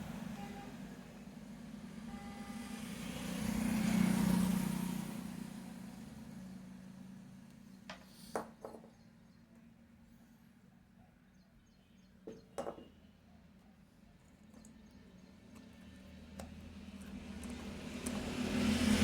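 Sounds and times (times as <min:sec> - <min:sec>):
vehicle passing by: 0:01.9 - 0:07.3, 0:15.8 - 0:19.0.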